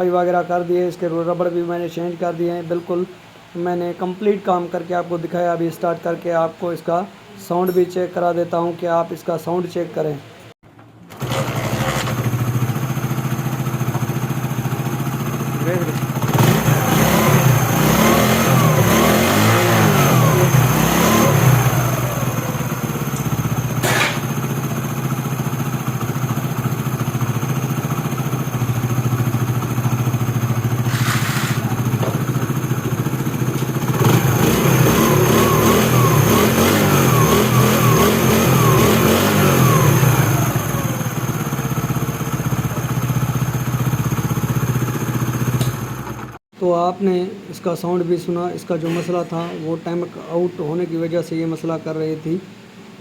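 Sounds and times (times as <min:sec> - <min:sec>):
motorcycle engine revving and idling: 0:11.1 - 0:46.4.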